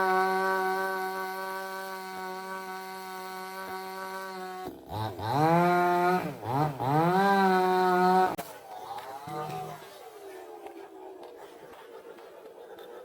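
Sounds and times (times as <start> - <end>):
chainsaw revving: 0.0 - 10.0.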